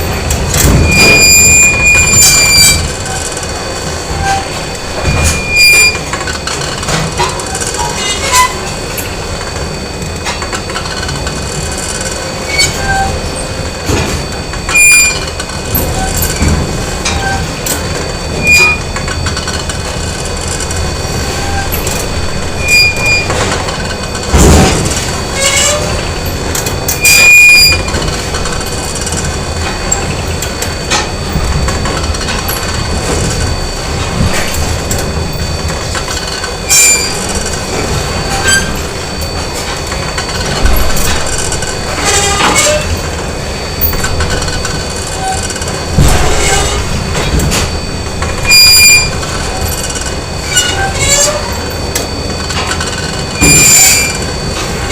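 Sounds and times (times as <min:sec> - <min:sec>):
machinery hum and hiss: 0:00.0 - 0:54.9
whining machine tones: 0:00.0 - 0:54.9
high squeals: 0:00.7 - 0:03.4, 0:04.0 - 0:06.2, 0:14.2 - 0:19.3, 0:20.7 - 0:24.4, 0:32.4 - 0:54.9.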